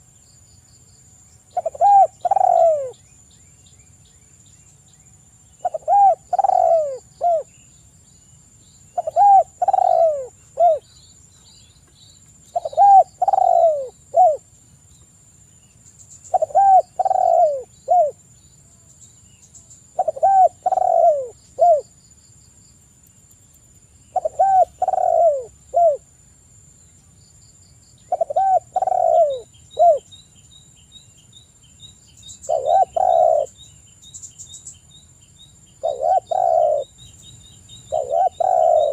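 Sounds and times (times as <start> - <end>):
small birds chirping: 0.0 - 26.1, 26.8 - 38.9
dove cooing: 1.5 - 3.0, 5.6 - 7.5, 9.0 - 10.8, 12.5 - 14.5, 16.3 - 18.2, 20.0 - 21.9, 24.1 - 26.0, 28.1 - 30.1, 32.5 - 33.6, 35.8 - 36.9, 37.9 - 38.9.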